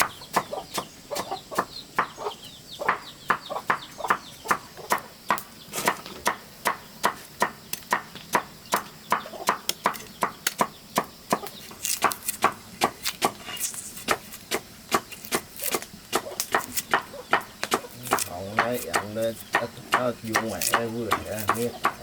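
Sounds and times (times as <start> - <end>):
chickens clucking: 0.0 - 12.6, 14.1 - 22.0
blade chopping: 4.5 - 22.0.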